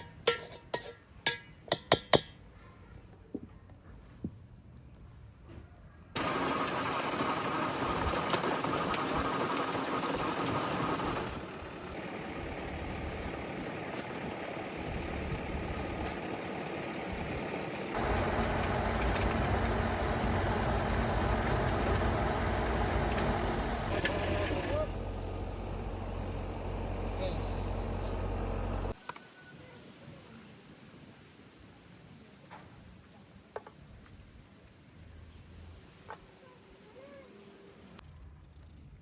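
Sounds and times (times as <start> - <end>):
motor engine running: 6.2 - 29.0.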